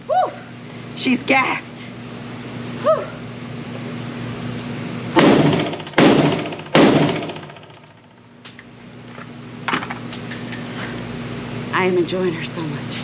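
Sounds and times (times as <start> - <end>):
rifle shots: 5.2 - 7.7.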